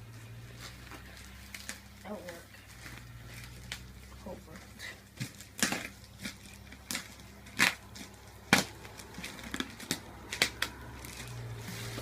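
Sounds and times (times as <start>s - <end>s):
knife ripping tape and cardboard: 4.9s - 12.0s.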